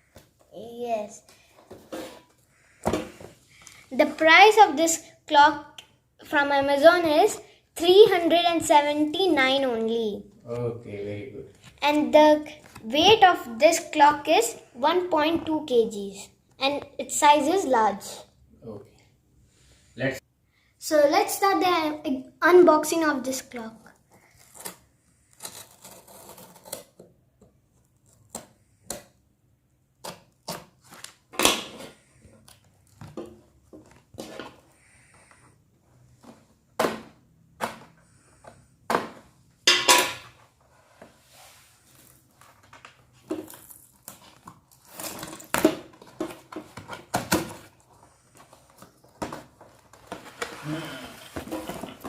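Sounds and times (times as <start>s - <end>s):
knocks and scrapes of packing: 1.5s - 3.4s, 40.3s - 52.0s.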